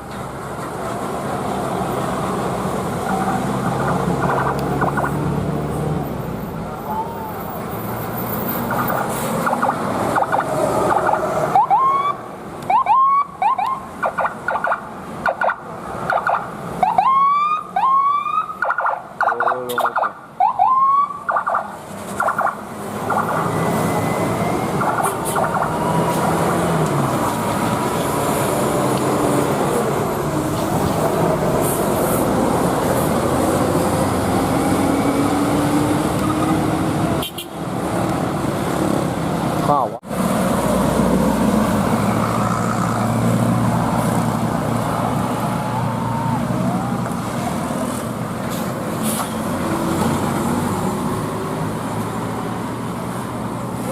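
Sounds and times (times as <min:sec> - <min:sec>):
traffic noise: 0:00.0 - 0:53.9
bus air horn rising tones: 0:37.2 - 0:37.6.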